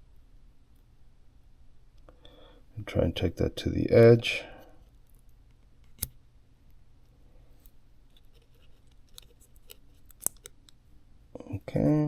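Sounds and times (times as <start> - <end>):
sharp clicks of phone parts: 5.8 - 6.2.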